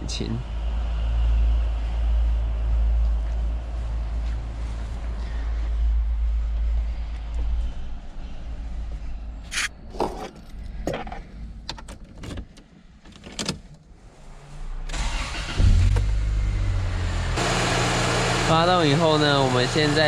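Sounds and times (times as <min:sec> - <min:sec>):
car engine cranking and idling: 0:14.8 - 0:20.0.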